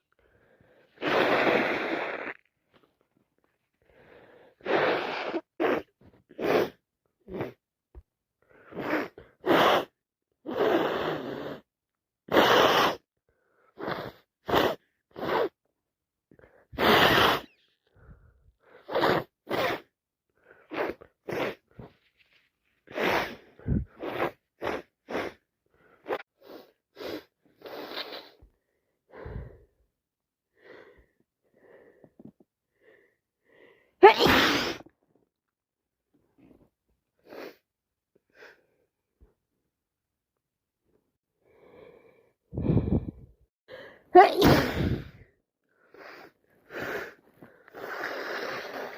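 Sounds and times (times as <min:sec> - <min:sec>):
person sniffing: 0:00.0 - 0:02.4, 0:04.0 - 0:07.6, 0:08.6 - 0:11.7, 0:12.3 - 0:13.0, 0:13.7 - 0:15.6, 0:16.7 - 0:17.7, 0:18.6 - 0:28.5, 0:34.0 - 0:34.9, 0:37.2 - 0:37.6, 0:42.6 - 0:45.2, 0:45.8 - 0:48.9
person sneezing: 0:34.0 - 0:34.9, 0:44.2 - 0:45.2.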